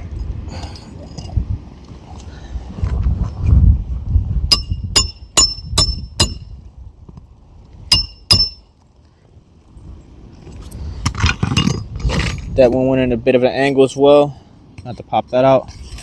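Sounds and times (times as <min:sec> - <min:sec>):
hammer striking metal tool: 0:04.5 - 0:06.5, 0:07.9 - 0:08.6.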